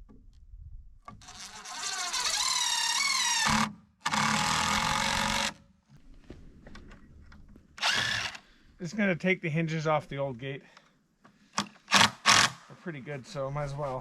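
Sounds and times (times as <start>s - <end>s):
power drill driving screws: 1.2s - 5.6s, 7.8s - 8.4s, 11.6s - 12.6s.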